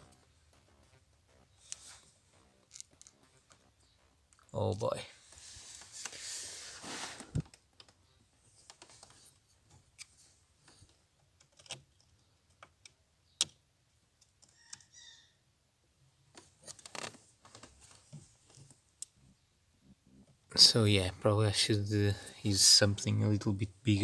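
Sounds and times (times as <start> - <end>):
rustling: 5.1 - 7.6.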